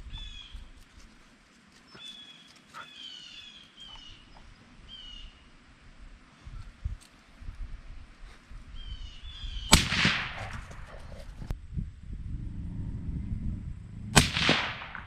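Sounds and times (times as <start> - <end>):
bird chirping: 1.9 - 5.5
suppressed rifle shots: 9.7 - 10.9, 14.2 - 15.0.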